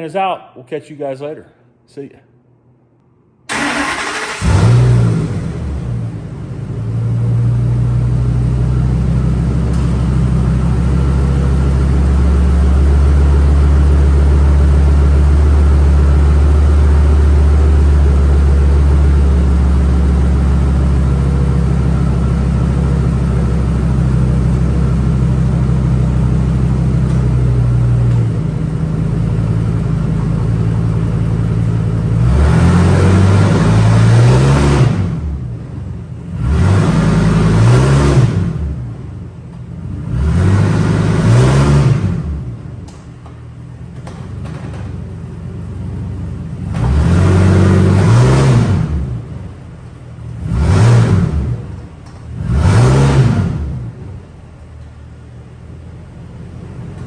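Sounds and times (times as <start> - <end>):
engine idling and revving: 3.5 - 57.0.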